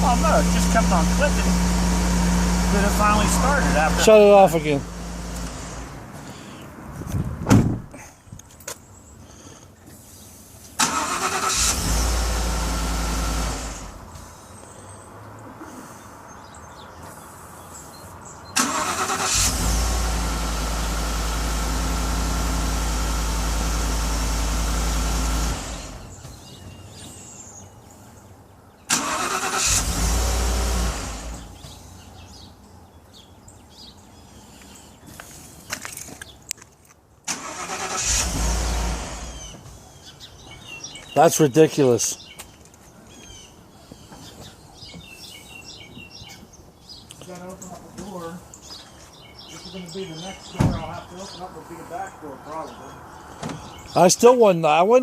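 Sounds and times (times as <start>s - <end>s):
truck engine starting and running: 0.0s - 8.5s, 10.8s - 15.0s, 18.3s - 27.3s, 28.8s - 32.8s, 37.2s - 42.2s.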